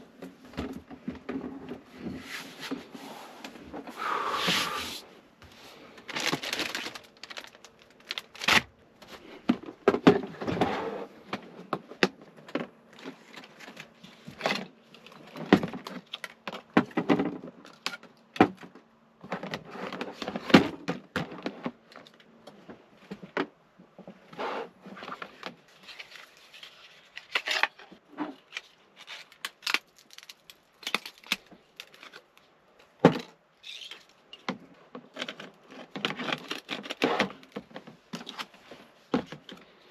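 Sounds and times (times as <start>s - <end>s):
packaging rustling and crinkling: 6.0s - 8.7s, 24.8s - 32.4s, 35.0s - 39.7s.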